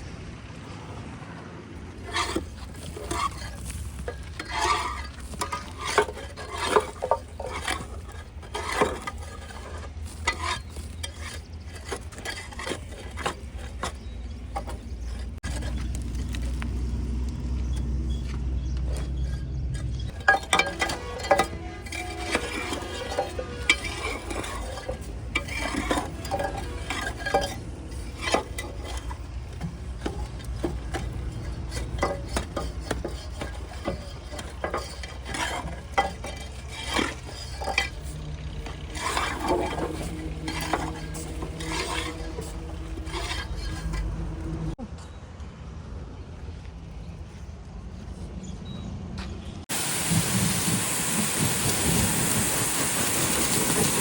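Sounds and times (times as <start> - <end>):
metal clinks and knocks: 18.6 - 44.8
low hum: 35.7 - 44.9
water spray hissing on metal: 49.7 - 54.0.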